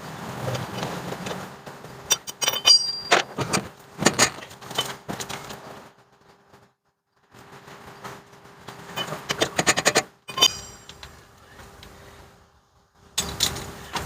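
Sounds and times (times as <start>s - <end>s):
sharp metal clink: 2.3s - 3.3s, 10.3s - 11.0s.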